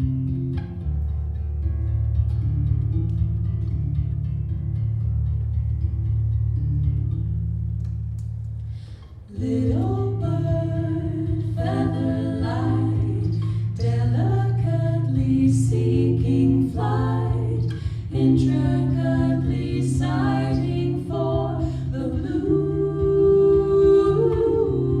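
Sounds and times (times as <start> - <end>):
long held low notes: 0.0 - 25.0
woman singing folk song: 9.3 - 25.0.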